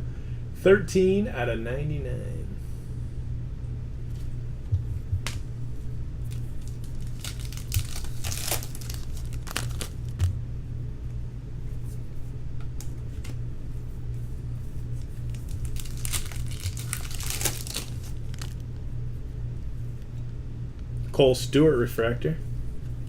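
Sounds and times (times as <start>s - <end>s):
steady low hum: 0.0s - 23.0s
wrappers crinkling and tearing: 6.2s - 10.3s, 15.0s - 18.7s.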